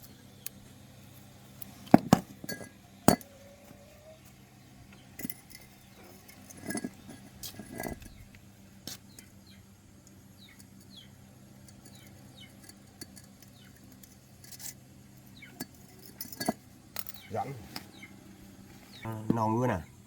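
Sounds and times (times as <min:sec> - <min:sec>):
metal parts and tools clinking: 0:01.9 - 0:03.9, 0:05.2 - 0:08.2, 0:15.4 - 0:18.0.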